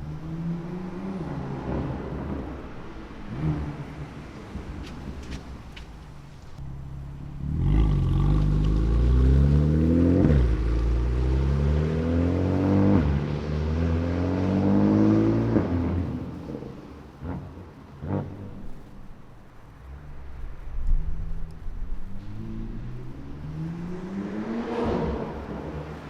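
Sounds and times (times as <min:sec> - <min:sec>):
car engine accelerating hard: 0:06.6 - 0:18.9, 0:21.1 - 0:26.0.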